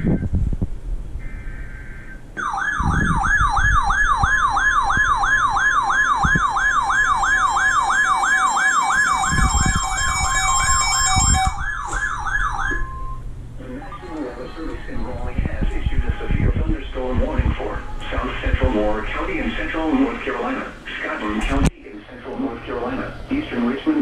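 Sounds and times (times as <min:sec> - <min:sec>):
warbling electronic siren: 0:01.2 - 0:20.4
buzzy alert data burst: 0:08.4 - 0:15.4
steady single tone: 0:12.7 - 0:15.2.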